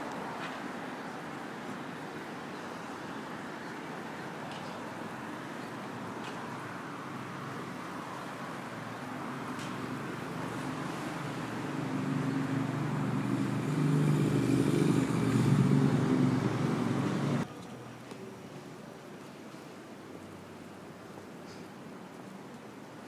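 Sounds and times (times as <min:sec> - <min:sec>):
traffic hum: 0:00.0 - 0:23.0
vehicle engine approaching: 0:09.8 - 0:17.5.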